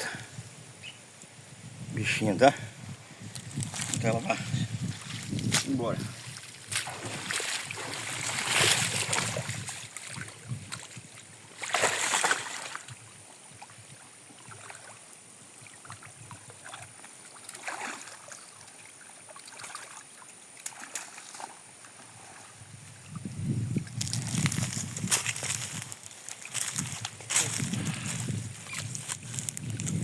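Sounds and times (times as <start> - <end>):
water splashing from wading: 5.0 - 13.0, 14.3 - 22.5.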